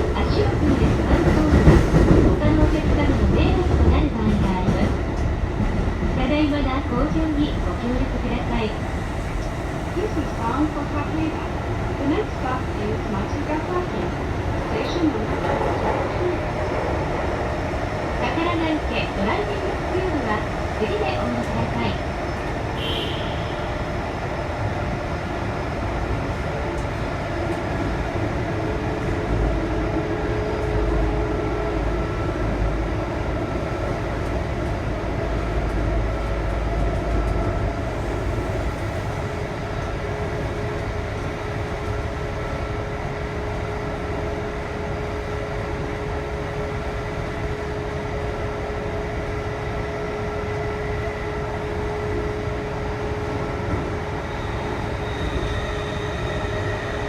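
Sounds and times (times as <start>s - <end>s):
wheels rumbling on rail: 0.0s - 57.0s.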